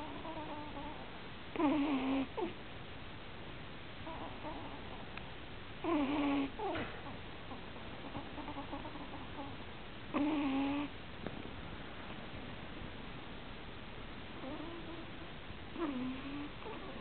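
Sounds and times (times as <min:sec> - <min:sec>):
puppy snoring: 0:00.0 - 0:02.6, 0:04.0 - 0:05.2, 0:05.8 - 0:10.9, 0:14.4 - 0:17.0.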